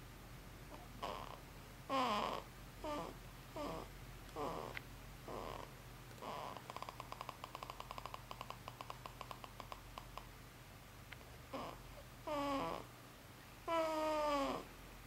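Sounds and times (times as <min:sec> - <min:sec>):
baby snoring: 0:00.7 - 0:10.1, 0:11.5 - 0:12.9, 0:13.7 - 0:14.7.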